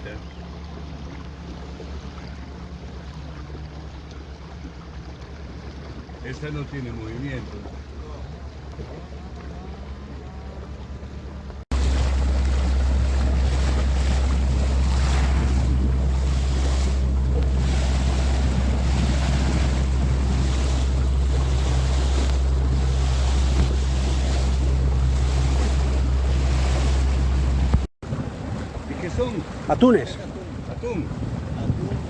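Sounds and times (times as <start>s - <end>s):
boat engine droning: 0.0s - 32.0s
water rushing past: 0.0s - 32.0s
wind buffeting microphone: 11.2s - 32.0s.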